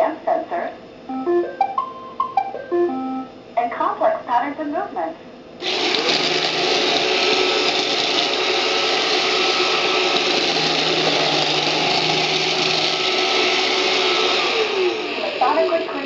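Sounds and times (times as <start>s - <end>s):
robot vacuum whirring: 5.6s - 16.0s.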